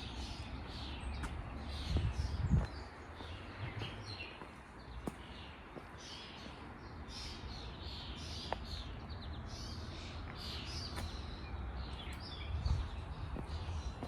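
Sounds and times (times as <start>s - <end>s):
birds chirping and singing: 0.0s - 14.0s
steady low rumble: 11.0s - 14.0s.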